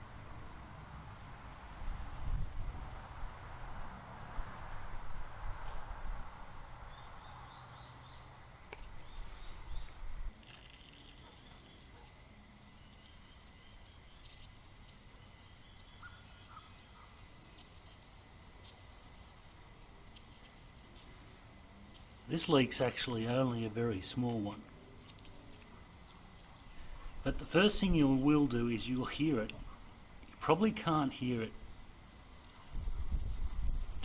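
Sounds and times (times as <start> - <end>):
insects chirping: 0.0 - 34.0
soft spray hiss: 8.8 - 34.0.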